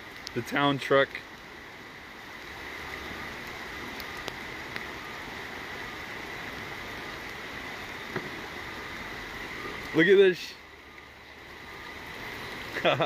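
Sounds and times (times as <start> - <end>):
floodwater rushing: 0.0 - 13.0
faint ticks: 3.4 - 4.9.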